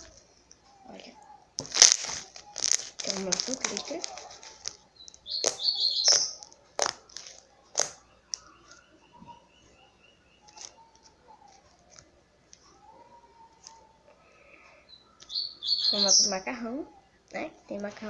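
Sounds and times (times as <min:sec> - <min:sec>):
bird chirping: 0:00.0 - 0:17.4
slime popping and crackling: 0:01.6 - 0:08.4.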